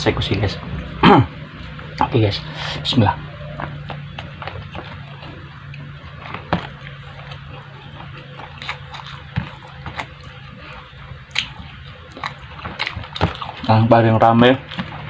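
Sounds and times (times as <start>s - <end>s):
low steady hum: 0.0s - 15.0s
chewing and mouth clicks: 3.5s - 13.9s, 14.6s - 15.0s.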